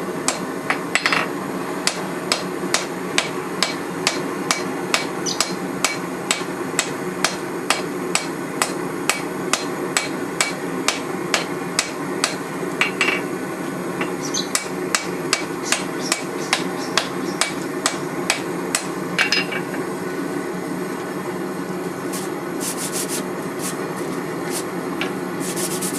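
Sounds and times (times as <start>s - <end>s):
hammer striking steel on anvil: 0.3s - 13.3s, 14.0s - 19.7s.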